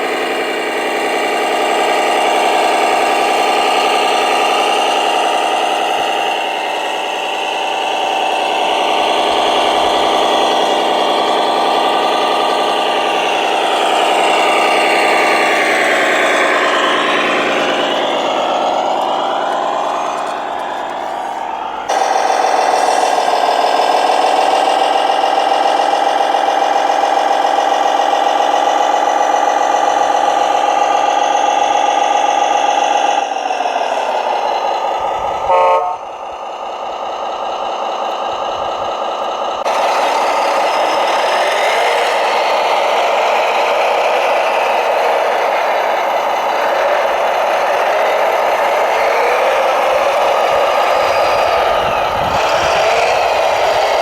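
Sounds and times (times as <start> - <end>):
rough motor sound: 0.0 - 54.0
short horn toot: 35.5 - 36.1.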